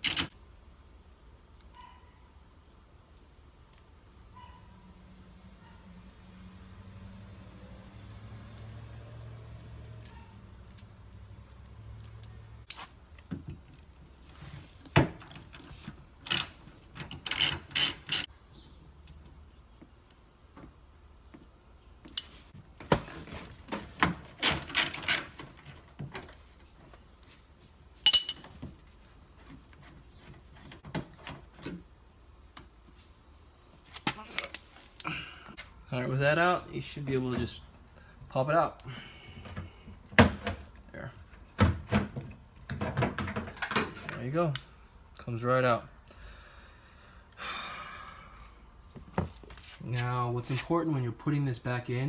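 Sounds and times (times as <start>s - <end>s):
ratchet wrench clicking: 17.2s - 18.3s
sharp metallic clink: 28.1s - 28.5s.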